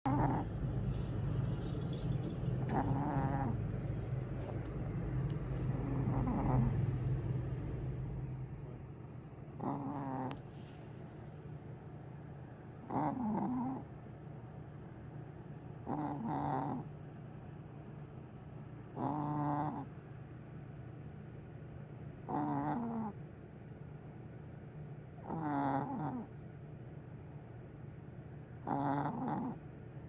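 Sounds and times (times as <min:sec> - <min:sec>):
pet snoring: 0:00.0 - 0:00.5, 0:02.6 - 0:07.0, 0:09.6 - 0:10.7, 0:12.8 - 0:13.9, 0:15.8 - 0:16.9, 0:18.9 - 0:19.9, 0:22.3 - 0:23.2, 0:25.2 - 0:26.3, 0:28.6 - 0:29.6
low steady rumble: 0:00.0 - 0:25.3.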